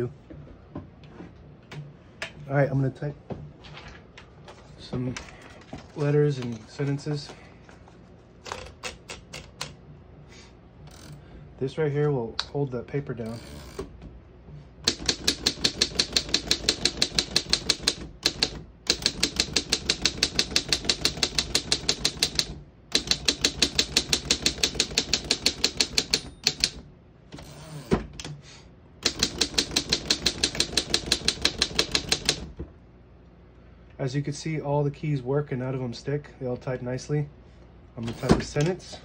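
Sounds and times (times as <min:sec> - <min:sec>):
typewriter keys striking: 0:14.9 - 0:26.8, 0:29.0 - 0:32.5.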